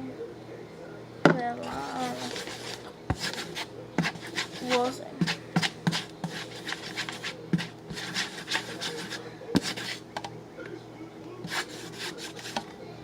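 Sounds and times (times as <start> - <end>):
utensil scraping a bowl: 1.6 - 10.1, 11.4 - 12.7.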